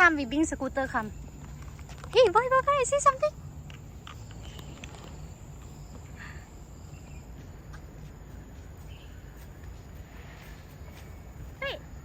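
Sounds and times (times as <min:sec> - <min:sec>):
faint chirps: 0:03.2 - 0:12.0.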